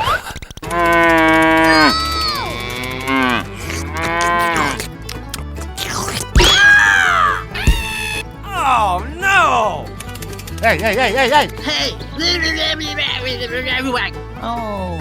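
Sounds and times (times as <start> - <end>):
cow mooing: 0.7 - 4.8
sharp knock: 7.6 - 8.0.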